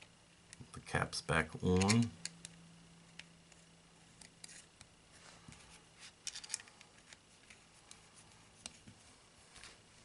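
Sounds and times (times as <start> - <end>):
small clicks of caps being fitted: 1.7 - 3.6.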